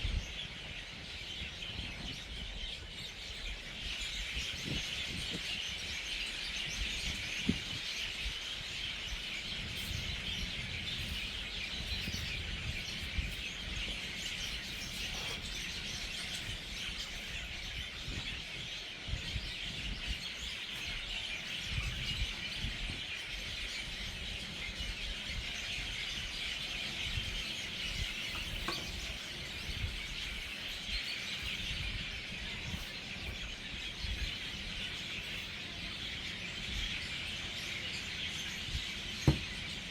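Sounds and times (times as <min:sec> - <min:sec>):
chorus of birds chattering: 0:00.0 - 0:39.9.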